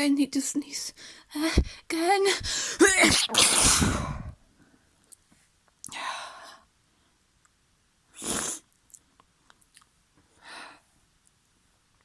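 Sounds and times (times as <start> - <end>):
breath out: 2.4 - 4.4
person sneezing: 2.6 - 4.4.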